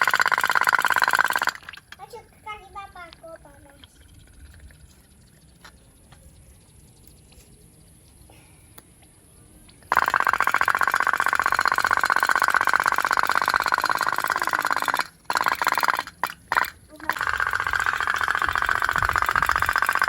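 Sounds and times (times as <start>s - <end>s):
toy boat engine putt-putting: 0.0s - 4.0s, 9.8s - 20.0s.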